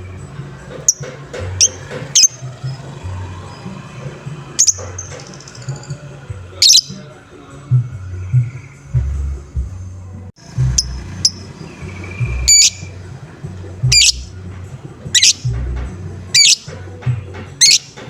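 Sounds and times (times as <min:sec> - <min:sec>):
background music with low beat: 0:00.0 - 0:18.0
lovebird harsh calls: 0:00.8 - 0:02.8, 0:04.6 - 0:06.0, 0:06.6 - 0:07.1, 0:10.7 - 0:13.0, 0:13.8 - 0:14.4, 0:15.0 - 0:15.6, 0:16.2 - 0:16.8, 0:17.5 - 0:18.0
thin high bird chirps: 0:01.6 - 0:02.4, 0:04.6 - 0:06.0, 0:06.6 - 0:07.1, 0:10.8 - 0:13.0, 0:13.8 - 0:14.3, 0:15.1 - 0:15.6, 0:16.3 - 0:16.7, 0:17.6 - 0:18.0.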